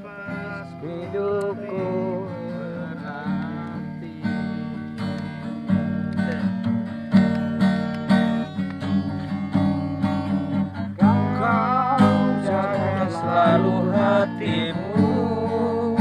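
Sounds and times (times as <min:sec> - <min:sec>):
person singing: 0:00.0 - 0:04.3, 0:10.7 - 0:16.0
strummed acoustic guitar: 0:00.0 - 0:16.0.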